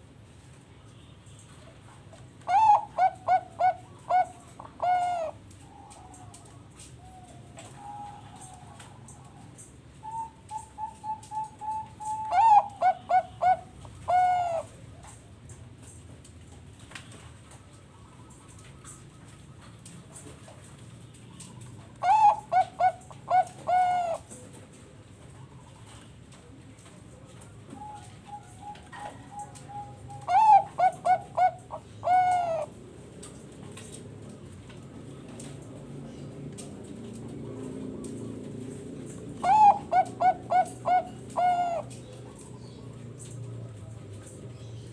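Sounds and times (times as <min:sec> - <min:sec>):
dove cooing: 0:02.4 - 0:15.2, 0:21.3 - 0:26.0, 0:27.2 - 0:32.8, 0:35.2 - 0:43.6.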